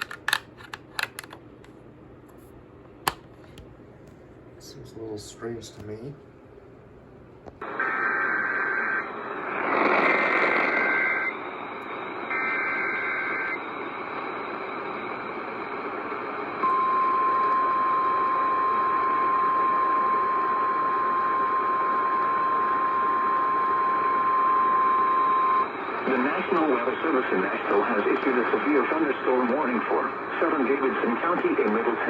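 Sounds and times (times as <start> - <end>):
radio receiver hiss: 7.6 - 16.4, 25.6 - 32.0
steady warning alarm tone: 10.8 - 15.6, 16.6 - 26.0.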